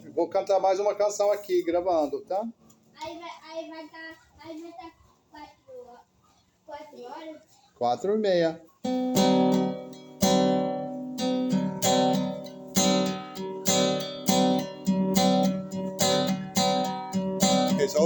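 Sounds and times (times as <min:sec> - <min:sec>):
acoustic guitar strumming: 0:08.8 - 0:18.0.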